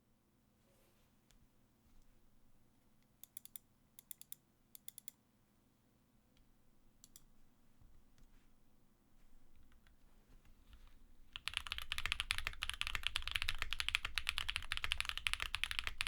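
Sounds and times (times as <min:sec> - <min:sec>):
mechanical keyboard clicks: 0:11.4 - 0:16.0.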